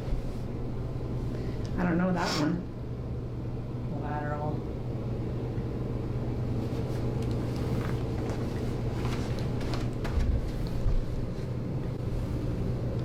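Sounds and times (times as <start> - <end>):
low room hum: 0.0 - 13.0
rustling on treatment table: 6.5 - 12.6.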